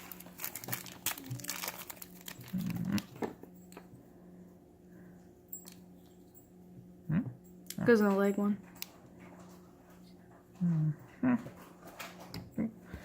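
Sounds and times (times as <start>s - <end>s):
plastic packaging crinkling: 0.0s - 3.3s.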